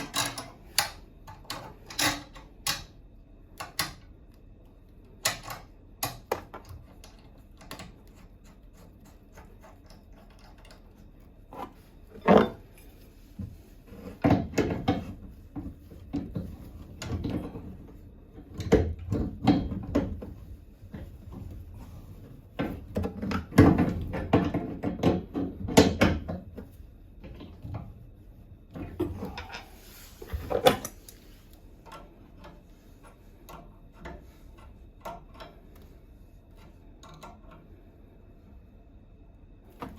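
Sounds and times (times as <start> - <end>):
tools and parts clattering: 0.0 - 3.0, 9.4 - 13.0, 28.8 - 31.2.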